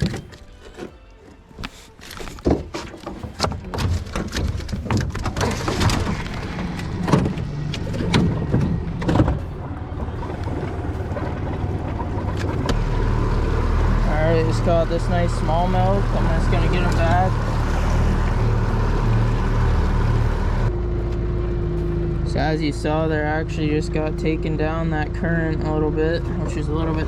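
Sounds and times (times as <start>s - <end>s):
knocks and clicks in boat: 0.0s - 20.7s
boat motor running: 0.0s - 27.0s
rushing water: 4.8s - 20.7s.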